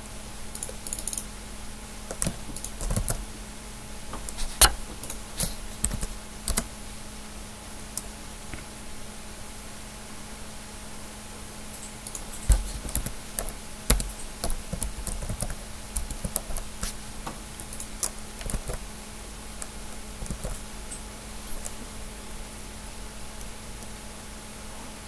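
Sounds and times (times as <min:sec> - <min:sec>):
faint steady hum: 0:00.0 - 0:25.0
computer keyboard typing: 0:02.1 - 0:03.3, 0:05.8 - 0:06.7, 0:11.8 - 0:16.7, 0:17.6 - 0:18.8, 0:19.6 - 0:20.6.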